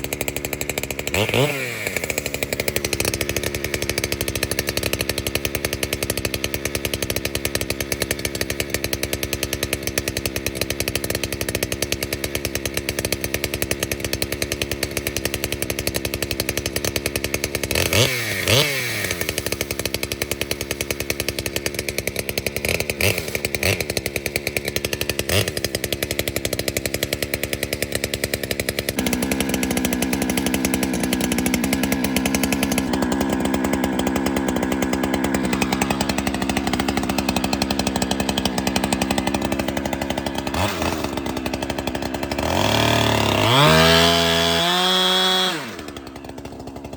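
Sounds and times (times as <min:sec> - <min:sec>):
chainsaw cutting wood: 0:00.0 - 0:46.9.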